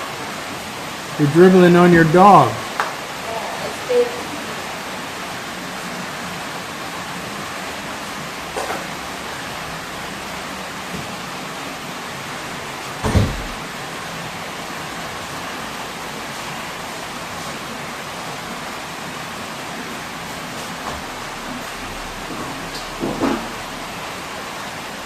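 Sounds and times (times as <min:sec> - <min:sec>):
heavy pouring rain: 0:00.0 - 0:25.0
loud thump: 0:13.0 - 0:13.7, 0:21.9 - 0:23.9.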